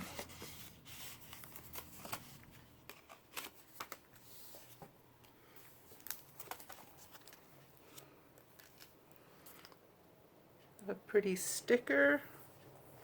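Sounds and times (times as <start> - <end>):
paper rustling: 0.0 - 4.9, 5.6 - 9.8.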